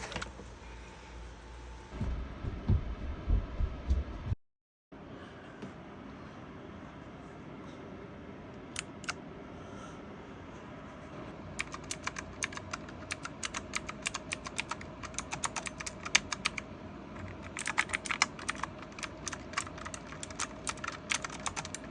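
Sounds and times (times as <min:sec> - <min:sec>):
mechanical keyboard typing: 0:08.8 - 0:09.2, 0:11.6 - 0:16.6, 0:17.2 - 0:21.9.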